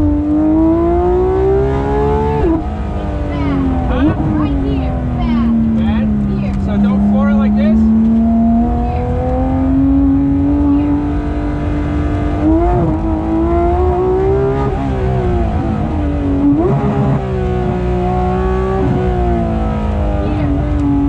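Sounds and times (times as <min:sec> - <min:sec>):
gear changes: 0:00.0 - 0:21.0
low road noise rumble: 0:00.0 - 0:21.0
race car engine revving: 0:00.0 - 0:21.0.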